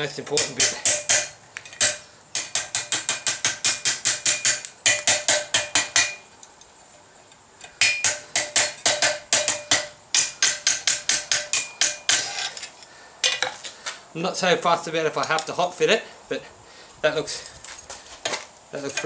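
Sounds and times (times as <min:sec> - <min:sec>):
hammer striking steel: 0:00.3 - 0:06.3, 0:07.8 - 0:12.6.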